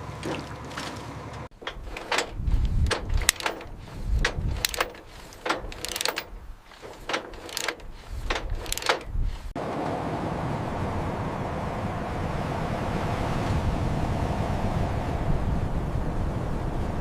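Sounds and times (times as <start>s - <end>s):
heavy metal clanking and ratcheting: 0.2s - 9.6s
low thuds: 0.2s - 9.6s.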